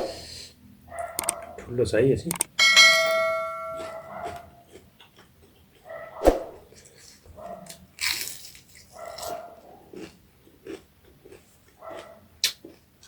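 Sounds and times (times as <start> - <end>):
chewing crispy fried fish: 3.8 - 6.0, 6.7 - 13.0.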